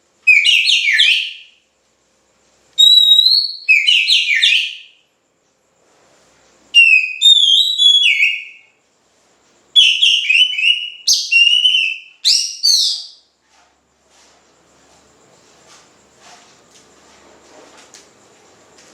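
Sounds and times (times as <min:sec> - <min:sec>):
bird singing whistled phrases: 0:00.2 - 0:01.6, 0:02.8 - 0:05.0, 0:06.8 - 0:08.7, 0:09.8 - 0:13.3.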